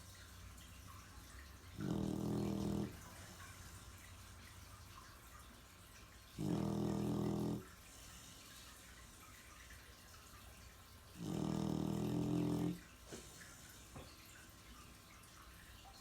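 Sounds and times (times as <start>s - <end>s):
loud snoring: 1.8s - 3.0s, 6.4s - 7.7s, 11.2s - 12.8s.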